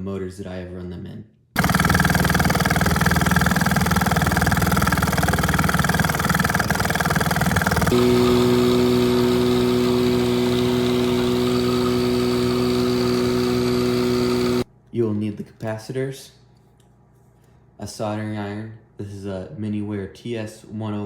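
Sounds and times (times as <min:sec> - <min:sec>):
outboard motor running: 0:01.6 - 0:14.7.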